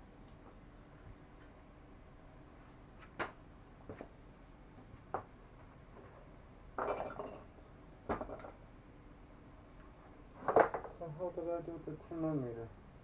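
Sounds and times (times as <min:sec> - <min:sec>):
metal tools clattering: 0:06.8 - 0:07.5.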